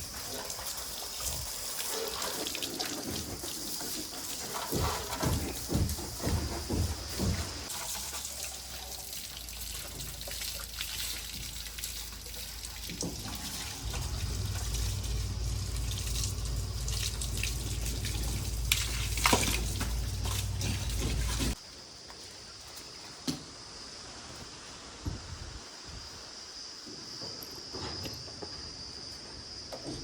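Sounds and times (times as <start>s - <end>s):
heavy diesel engine running: 13.2s - 21.6s
steady rushing hiss: 13.7s - 21.6s.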